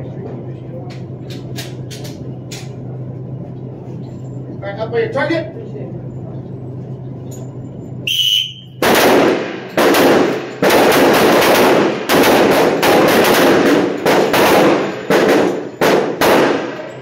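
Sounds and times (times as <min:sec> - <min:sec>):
whistle blast: 0:08.0 - 0:08.8
pistol shots echoing indoors: 0:08.1 - 0:17.0.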